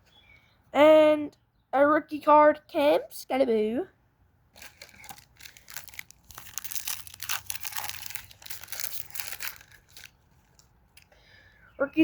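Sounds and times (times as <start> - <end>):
foil wrapper crinkling and tearing: 4.5 - 10.8.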